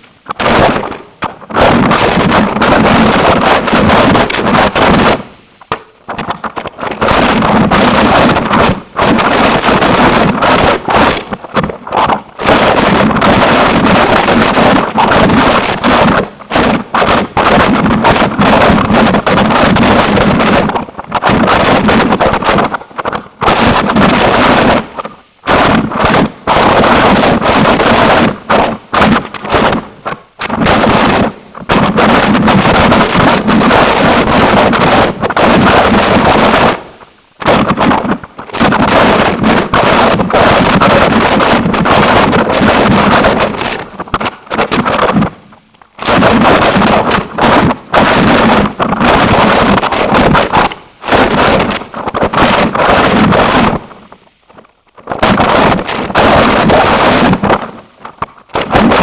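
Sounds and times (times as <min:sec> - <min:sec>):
harsh distorted noise music: 0:00.0 - 0:45.4, 0:46.0 - 0:54.0, 0:55.1 - 0:59.0.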